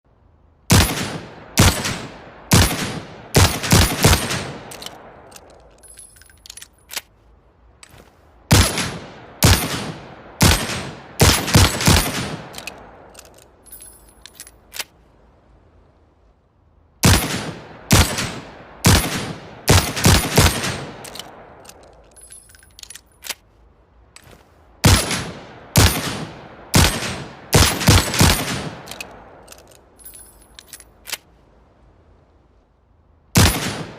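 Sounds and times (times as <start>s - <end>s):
faint metallic clicking and rattling: 4.6s - 8.2s, 11.9s - 15.0s, 21.0s - 24.5s, 28.8s - 31.4s.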